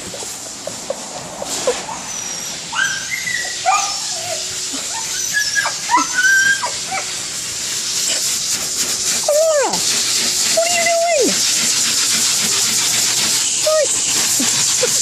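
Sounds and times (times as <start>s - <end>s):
dog whining and yelping: 1.6s - 7.2s
hair dryer hissing: 2.5s - 15.0s.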